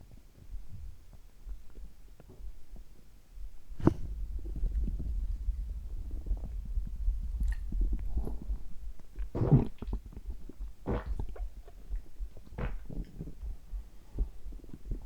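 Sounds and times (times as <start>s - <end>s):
low heartbeat throb: 0.5s - 15.0s
stomach gurgling: 3.8s - 15.0s.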